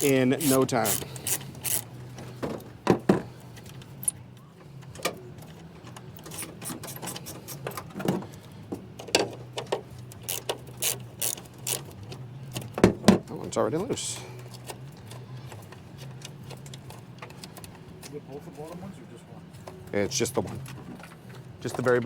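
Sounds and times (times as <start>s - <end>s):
metallic clicks of hand tools: 0.0s - 1.9s, 10.0s - 12.7s.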